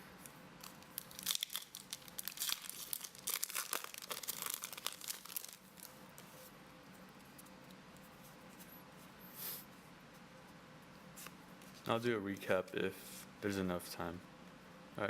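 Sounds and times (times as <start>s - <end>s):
foil wrapper crinkling and tearing: 0.6s - 5.9s.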